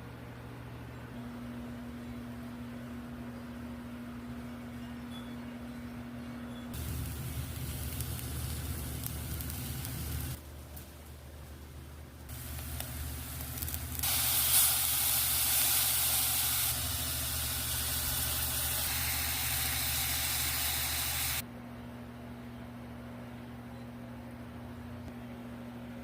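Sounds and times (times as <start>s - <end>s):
candy mixture sizzling in a pan: 6.8s - 11.2s, 12.2s - 21.4s.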